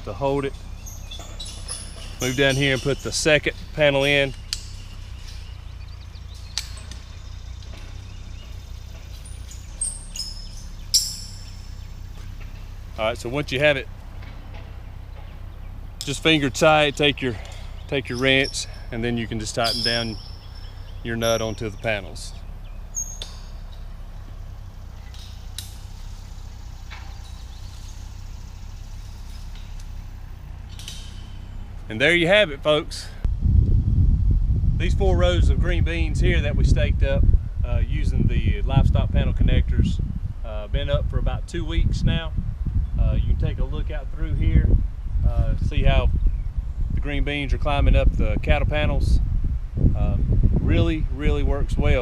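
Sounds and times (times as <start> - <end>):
light metal clinks: 0.0 - 33.2
steady low rumble: 0.0 - 52.0
sharp metal click: 4.0 - 5.6, 6.3 - 11.7, 25.0 - 26.2, 30.7 - 31.5.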